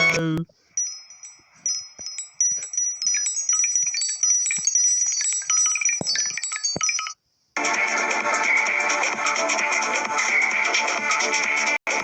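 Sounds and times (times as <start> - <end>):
phone ringtone chimes: 0.8 - 7.2.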